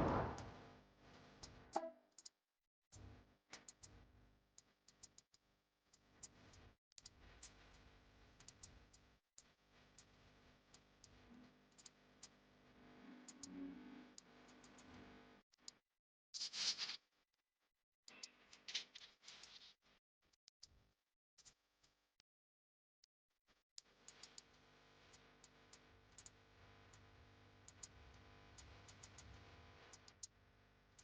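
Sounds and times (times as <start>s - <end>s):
faint clicks: 3.0s - 4.0s, 4.6s - 12.4s, 23.8s - 27.1s, 27.7s - 30.3s.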